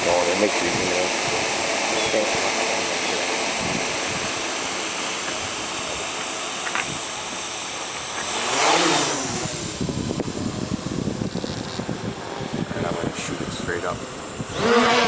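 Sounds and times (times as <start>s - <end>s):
drone motors whirring: 0.0s - 15.0s
wind noise: 3.3s - 6.1s, 8.8s - 15.0s.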